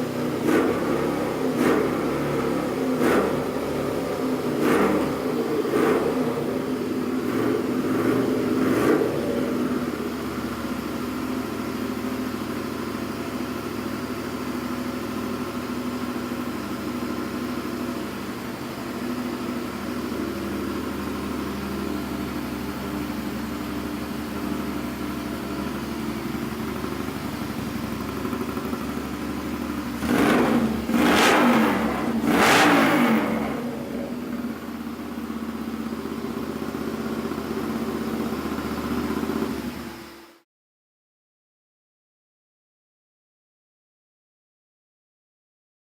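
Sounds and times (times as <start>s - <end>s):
engine revving: 0.0s - 10.2s, 30.0s - 34.8s
motorcycle engine idling: 0.0s - 40.3s.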